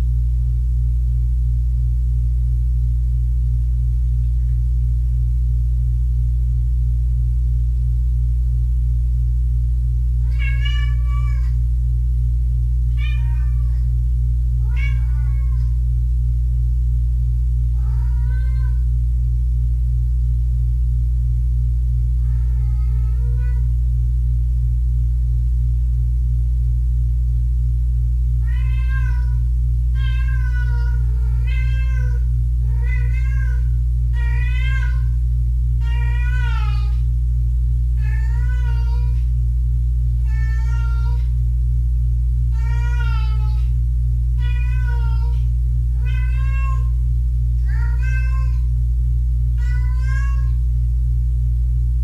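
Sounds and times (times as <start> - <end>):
low steady hum: 0.0 - 52.0
kitten meowing: 10.3 - 11.6, 14.6 - 15.8, 17.8 - 18.8, 28.4 - 29.4, 30.0 - 35.1, 35.8 - 37.0, 38.0 - 39.2, 40.3 - 41.3, 42.6 - 43.7, 44.4 - 45.4, 46.0 - 46.9, 47.7 - 48.7, 49.6 - 50.6.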